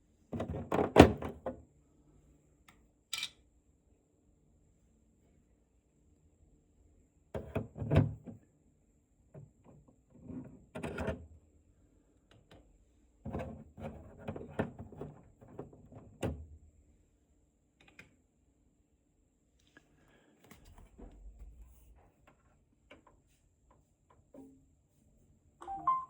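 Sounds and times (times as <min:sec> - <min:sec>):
faint high-pitched tone: 0:25.6 - 0:26.0.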